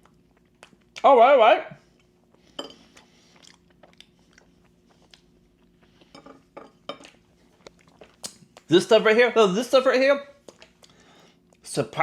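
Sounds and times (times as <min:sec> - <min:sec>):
chewing with mouth clicks: 0:00.0 - 0:01.1, 0:01.8 - 0:06.2, 0:07.0 - 0:08.7, 0:10.4 - 0:11.6.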